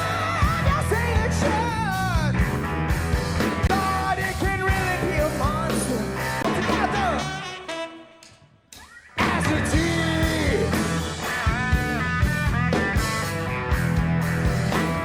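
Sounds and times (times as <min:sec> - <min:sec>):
sung and shouted lead vocal: 0:00.0 - 0:02.4, 0:03.6 - 0:07.4, 0:08.8 - 0:11.9
rock band playing live: 0:00.0 - 0:15.0.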